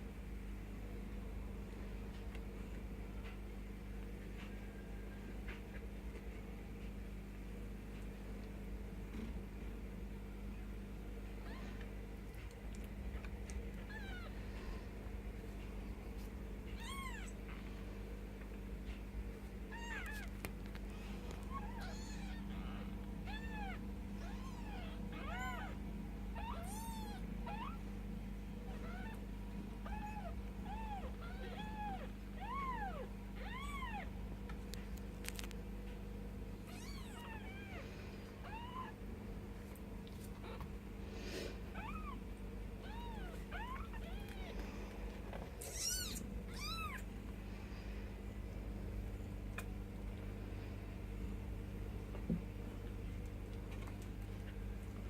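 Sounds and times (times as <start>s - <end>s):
steady low hum: 0.0s - 55.0s
kittens mewing: 13.6s - 14.8s, 16.7s - 17.6s, 21.0s - 25.8s, 28.7s - 29.2s, 29.8s - 34.1s, 36.6s - 39.0s, 40.4s - 47.1s.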